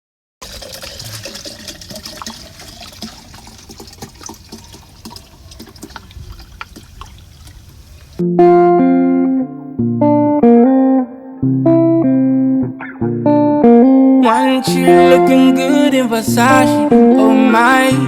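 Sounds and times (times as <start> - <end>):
liquid pouring into container: 0.4 - 8.2
loud guitar music: 8.2 - 18.0.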